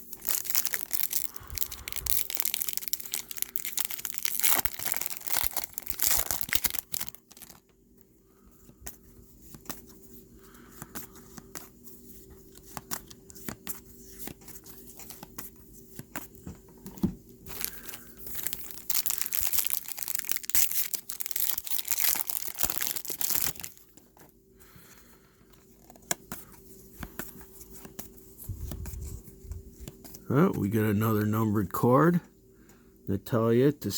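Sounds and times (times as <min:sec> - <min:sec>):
card wrappers tearing and crinkling: 0:00.0 - 0:07.7, 0:17.5 - 0:24.1
cards being shuffled: 0:08.7 - 0:10.0, 0:10.6 - 0:24.3, 0:25.6 - 0:30.3.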